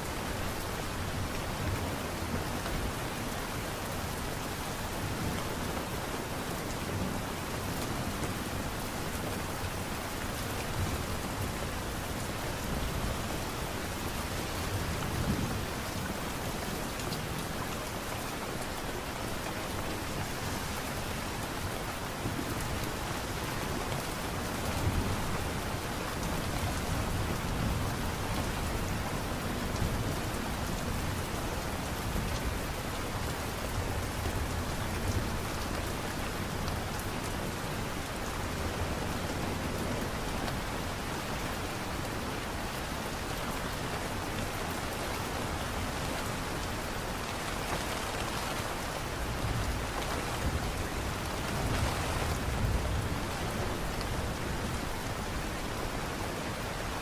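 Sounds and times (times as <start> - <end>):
light rain hiss: 0.0 - 57.0.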